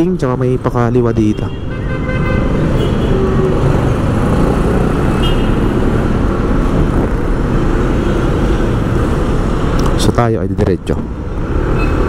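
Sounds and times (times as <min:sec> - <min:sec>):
street traffic: 0:00.0 - 0:12.0.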